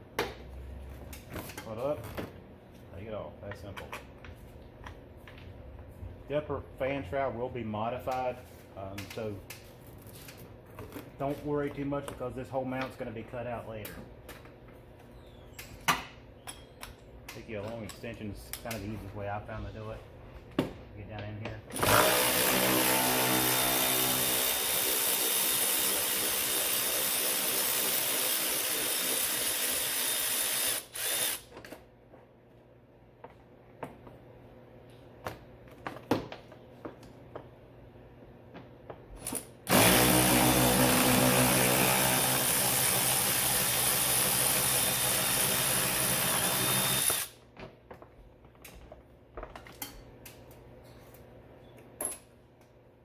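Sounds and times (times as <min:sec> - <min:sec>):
cordless power tool spinning: 0:39.7 - 0:47.4.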